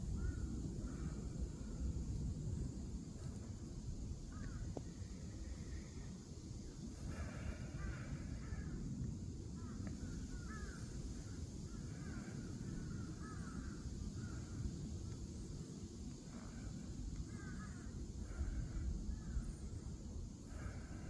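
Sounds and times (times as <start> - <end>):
steady low rumble: 0.0 - 21.0
wild birds calling: 6.8 - 8.8, 9.5 - 14.6, 15.5 - 19.9.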